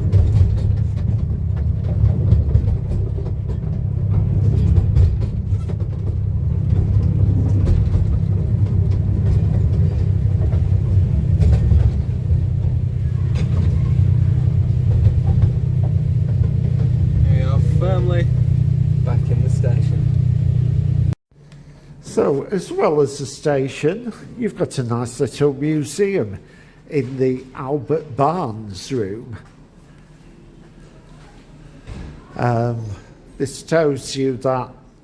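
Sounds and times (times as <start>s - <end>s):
railway carriage rumbling on track: 0.0s - 21.2s.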